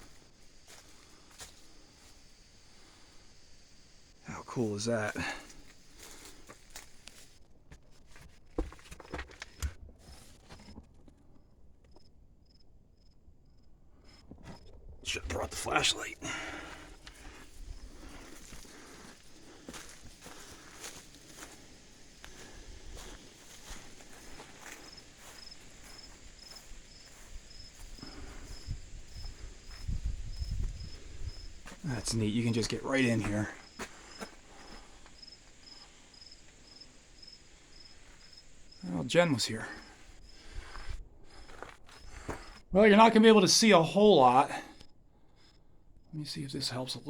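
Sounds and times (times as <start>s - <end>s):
footsteps on stony ground: 0.0s - 2.3s, 5.1s - 10.9s, 15.9s - 35.8s, 39.8s - 42.6s
cricket chirping: 0.0s - 47.0s.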